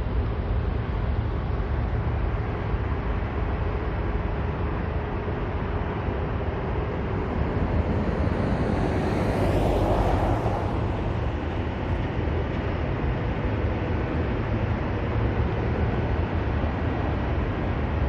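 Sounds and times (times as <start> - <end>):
road traffic: 0.0 - 18.0
wind rumbling on microphone: 0.0 - 18.0
vehicle passing: 5.7 - 13.0.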